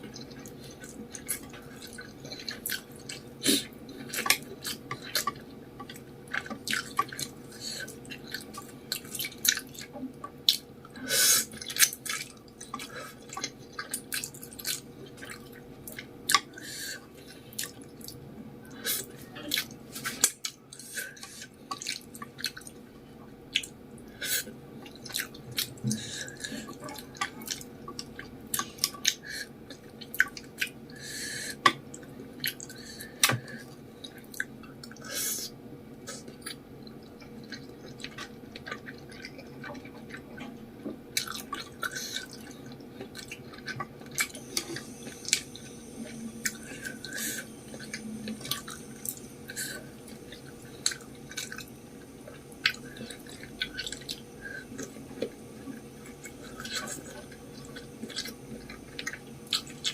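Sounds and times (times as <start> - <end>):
wet chewing mouth sounds: 31.7 - 59.9.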